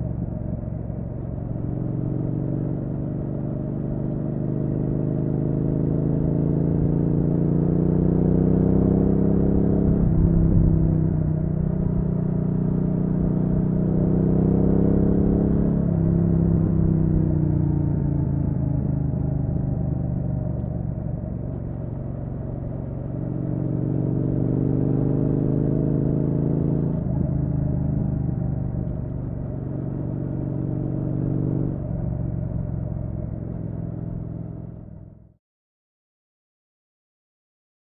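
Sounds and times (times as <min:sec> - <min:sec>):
motorcycle engine accelerating: 0:00.0 - 0:35.4.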